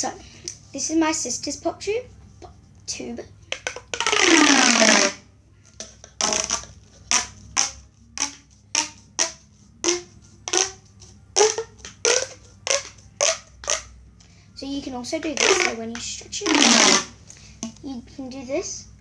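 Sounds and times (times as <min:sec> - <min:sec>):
plastic pop tube whirring: 0:03.5 - 0:05.2, 0:05.8 - 0:14.0, 0:15.2 - 0:17.8
pop tube popping crackles: 0:03.5 - 0:05.2, 0:05.8 - 0:13.9, 0:15.4 - 0:17.2.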